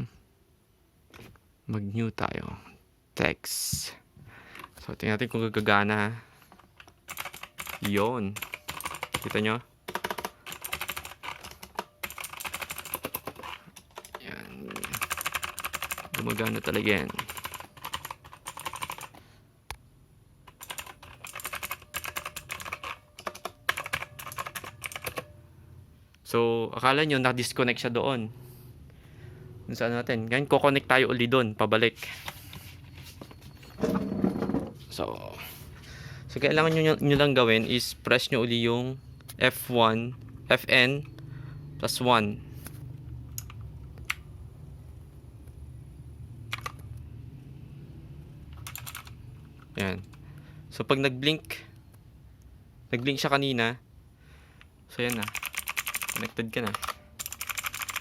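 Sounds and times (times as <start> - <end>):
keyboard typing: 6.5 - 19.2, 20.4 - 25.4, 43.3 - 44.2, 46.5 - 47.0, 48.5 - 50.2, 55.0 - 58.0.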